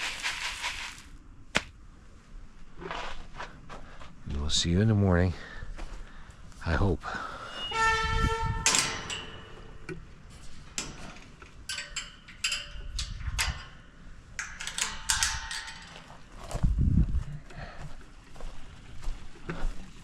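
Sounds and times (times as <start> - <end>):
short squeak: 7.4 - 8.7.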